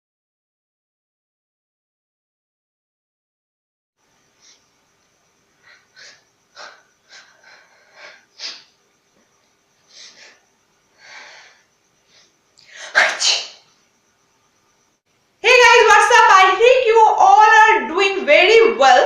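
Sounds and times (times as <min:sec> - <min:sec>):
person sneezing: 0:12.8 - 0:13.6.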